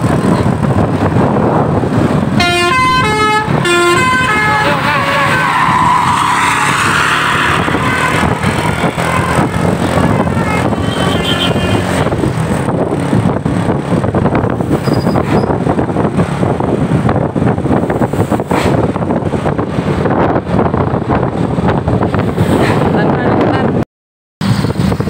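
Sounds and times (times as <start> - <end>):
bus engine and road noise: 0.0 - 23.8, 24.4 - 25.0
wind buffeting microphone: 0.0 - 23.8, 24.4 - 25.0
multi-tone bus horn: 2.3 - 12.1.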